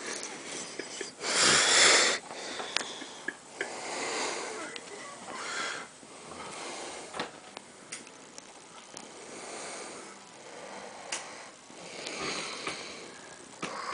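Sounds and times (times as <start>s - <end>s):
man breathing noisily through nose: 0.0s - 7.3s, 8.8s - 13.9s.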